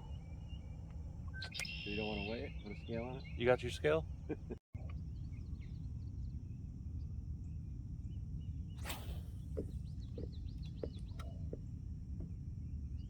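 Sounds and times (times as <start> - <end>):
faint high chirps: 0.0 - 3.4
steady low rumble: 0.0 - 13.0
brief whooshing swish: 8.8 - 9.4.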